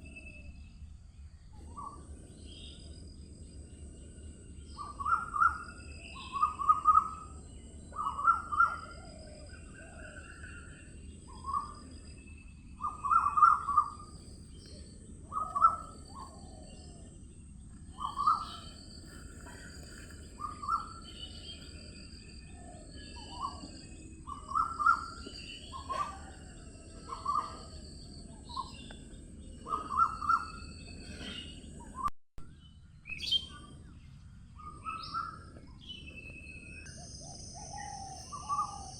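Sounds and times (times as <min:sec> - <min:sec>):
faint high bird chirps: 0:00.0 - 0:38.9
loud low bird calls: 0:04.7 - 0:32.1.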